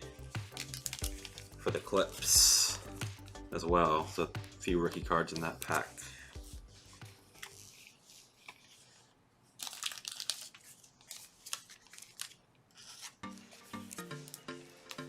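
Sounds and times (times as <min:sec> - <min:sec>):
background music: 0:00.0 - 0:07.8, 0:13.2 - 0:15.0
plastic wrapper crinkling and tearing: 0:00.2 - 0:03.4, 0:06.8 - 0:15.0.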